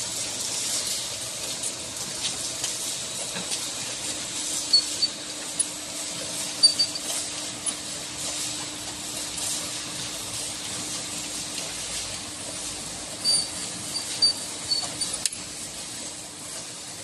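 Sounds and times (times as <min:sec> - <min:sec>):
filling machine hiss: 0:00.0 - 0:17.0
brief high squeaks: 0:13.2 - 0:15.2.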